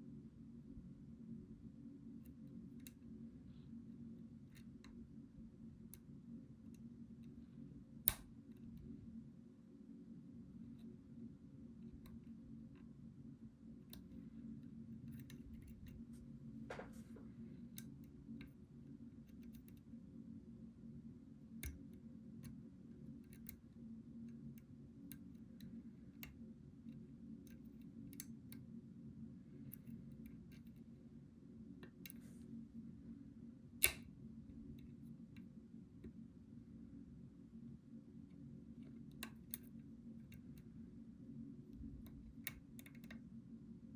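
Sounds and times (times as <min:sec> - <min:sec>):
steady low hum: 0:00.0 - 0:43.9
lock pick clicking: 0:08.1 - 0:08.3, 0:33.8 - 0:34.1.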